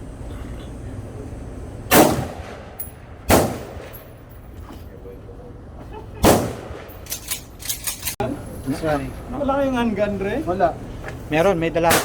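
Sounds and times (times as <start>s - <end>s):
rifle shots with echo: 1.9s - 4.1s, 6.2s - 7.0s.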